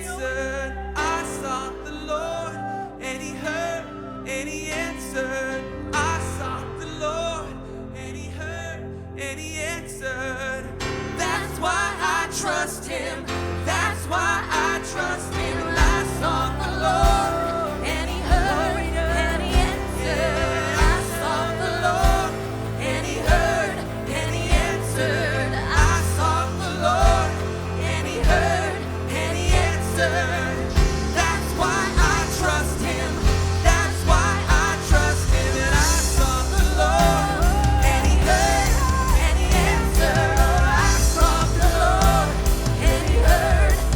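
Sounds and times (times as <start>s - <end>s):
vocalists singing: 0.0s - 43.9s
worship band playing gospel song: 0.0s - 43.9s
drums: 14.6s - 43.9s.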